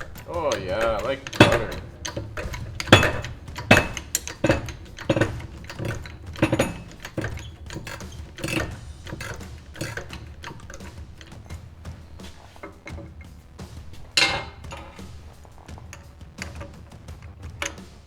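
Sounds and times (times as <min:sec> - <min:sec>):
hand ratchet clicking: 0:00.0 - 0:18.0.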